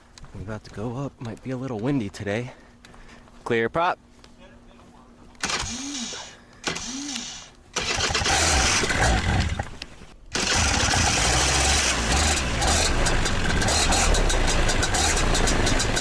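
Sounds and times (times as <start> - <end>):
paramotor engine starting and running: 5.4 - 16.0.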